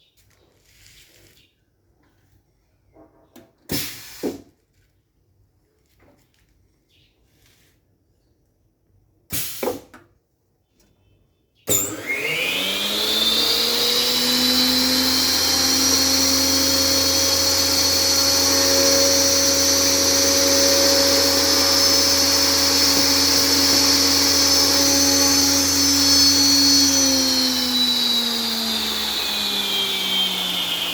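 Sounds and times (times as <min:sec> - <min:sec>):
cutting saw motor whine: 0:11.7 - 0:30.9.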